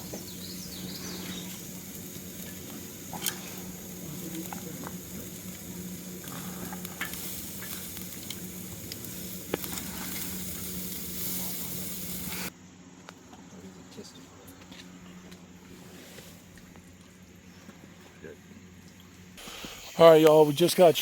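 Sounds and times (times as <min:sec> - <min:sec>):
campfire wood popping and crackling: 0:00.0 - 0:12.5, 0:14.6 - 0:21.0
food sizzling: 0:00.0 - 0:12.5, 0:19.4 - 0:21.0.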